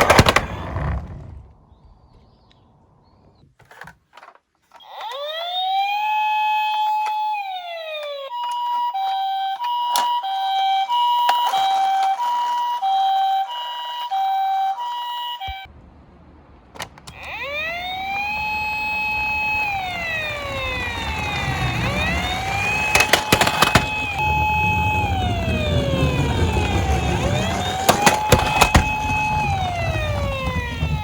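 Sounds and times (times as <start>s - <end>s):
toy electronic siren: 4.7s - 15.7s, 17.1s - 31.0s
low rumble: 15.7s - 31.0s.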